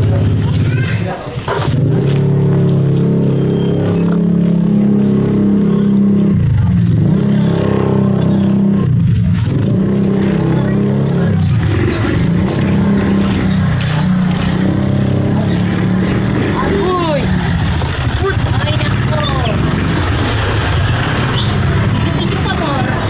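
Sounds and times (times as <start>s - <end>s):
vehicle engine running: 0.0s - 23.0s.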